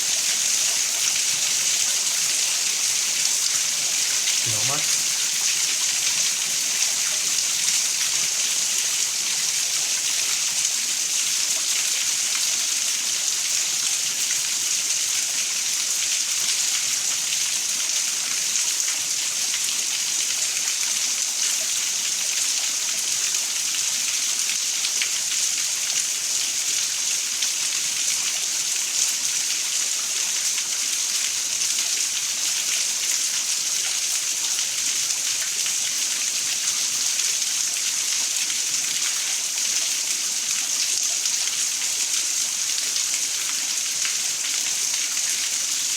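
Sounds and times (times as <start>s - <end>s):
heavy rain pouring: 0.0s - 8.0s.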